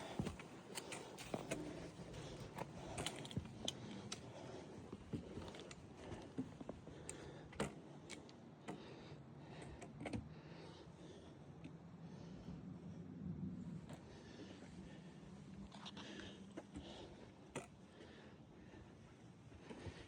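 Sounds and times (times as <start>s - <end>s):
hiker's footsteps on trail: 0.0s - 7.7s
gear jostling: 0.0s - 8.3s.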